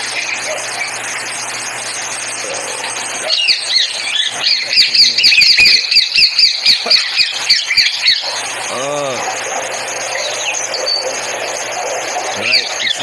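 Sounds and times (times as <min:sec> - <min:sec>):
bird squawking: 0:00.0 - 0:13.0
steady hiss: 0:00.0 - 0:13.0.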